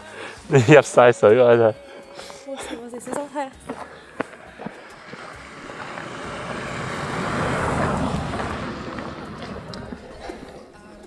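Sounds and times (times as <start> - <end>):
vehicle driving past: 3.5 - 11.0.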